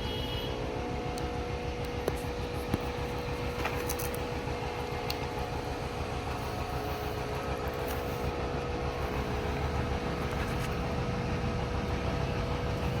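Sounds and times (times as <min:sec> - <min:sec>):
motor hum: 0:00.0 - 0:13.0.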